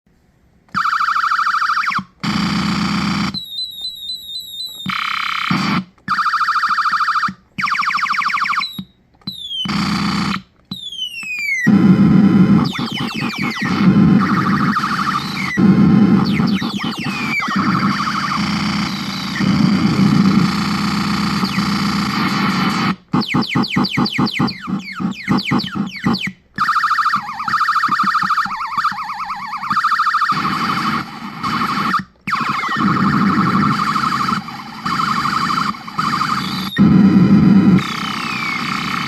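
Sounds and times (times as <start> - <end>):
retro video game sound effects: 11.7 - 39.0.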